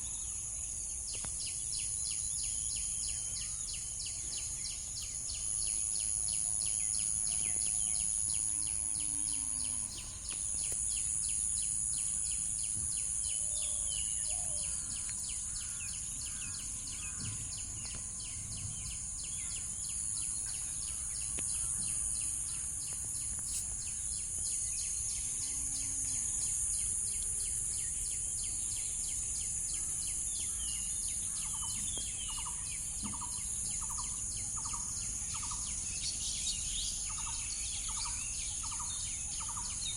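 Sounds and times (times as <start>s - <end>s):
insect chorus drone: 0.0s - 39.9s
bird chirps: 29.8s - 39.9s.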